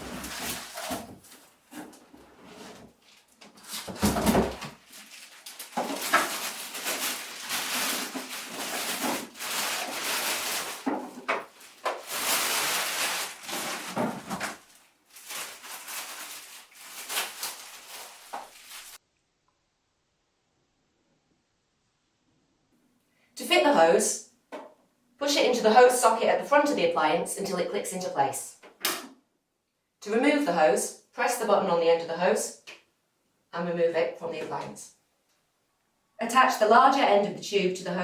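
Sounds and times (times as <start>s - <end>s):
packaging rustling and scraping: 0.0s - 19.0s.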